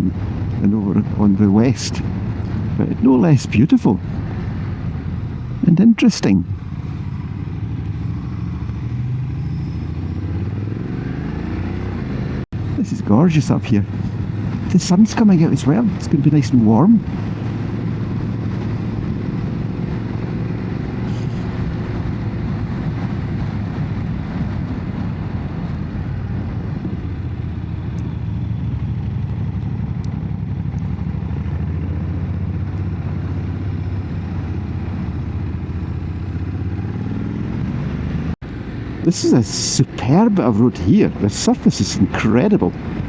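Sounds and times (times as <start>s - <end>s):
motorcycle engine running: 16.7s - 40.2s.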